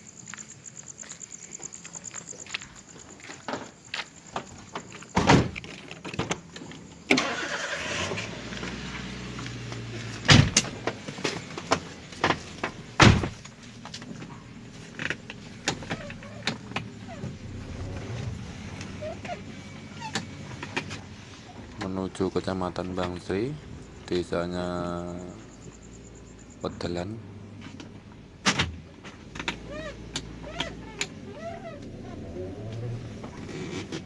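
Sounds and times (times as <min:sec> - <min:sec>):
knocks and clunks: 0:03.4 - 0:06.8, 0:09.7 - 0:21.1
car doors shutting: 0:05.1 - 0:22.0, 0:27.6 - 0:34.0
low engine hum: 0:07.7 - 0:34.0.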